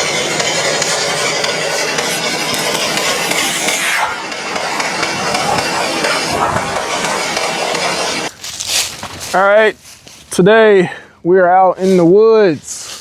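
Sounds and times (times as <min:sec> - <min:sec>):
chainsaw running at high revs: 0:00.0 - 0:08.3.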